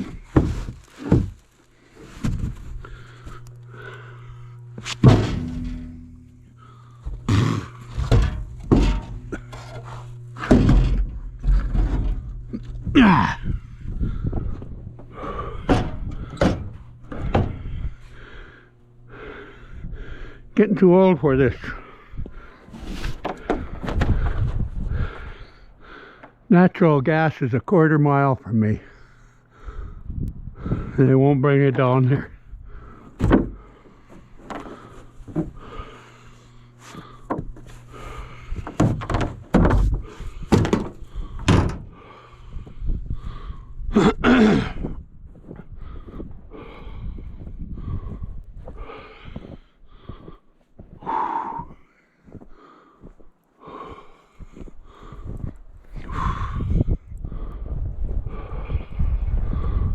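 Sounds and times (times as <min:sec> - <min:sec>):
faint low hum: 0:00.0 - 0:59.9
thumps and knocks: 0:04.9 - 0:06.3, 0:07.0 - 0:09.8, 0:10.4 - 0:12.3, 0:38.6 - 0:41.9.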